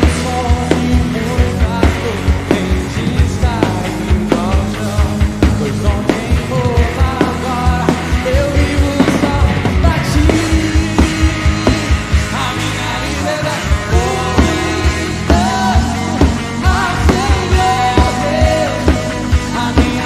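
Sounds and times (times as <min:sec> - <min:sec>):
person singing: 0:00.0 - 0:20.0
steady drum beat: 0:00.0 - 0:20.0
worship band playing: 0:00.0 - 0:20.0.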